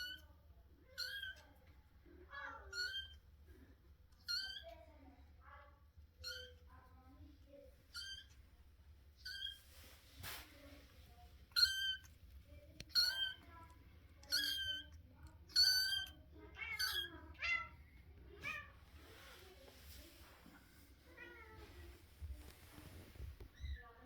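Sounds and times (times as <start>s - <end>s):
kitten meowing: 7.9s - 8.4s, 11.5s - 12.1s, 12.9s - 13.4s, 14.2s - 17.7s.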